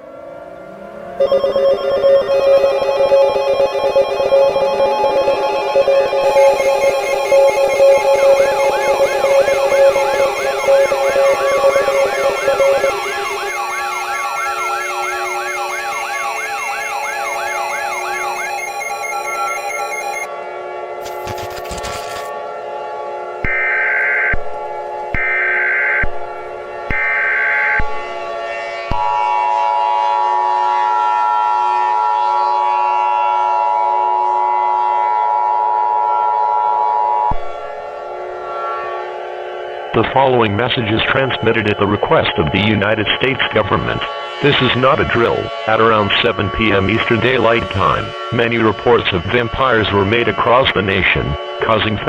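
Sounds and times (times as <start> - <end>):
low steady drone: 0.1 - 18.3
electronic siren wailing: 0.1 - 20.3, 23.4 - 33.2
harsh two-tone alarm: 1.2 - 20.3, 23.4 - 31.4, 37.3 - 52.0
steady tones: 1.2 - 20.3.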